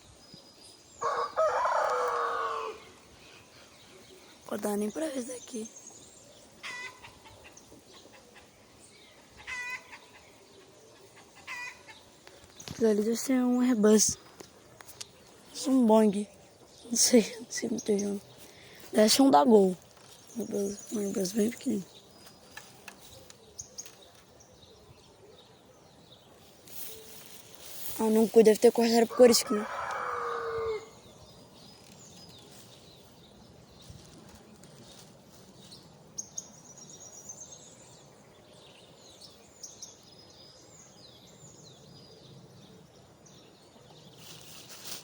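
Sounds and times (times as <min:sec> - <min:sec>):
bird calling: 0:06.6 - 0:08.5, 0:09.4 - 0:12.1
faint wind noise: 0:12.2 - 0:37.2.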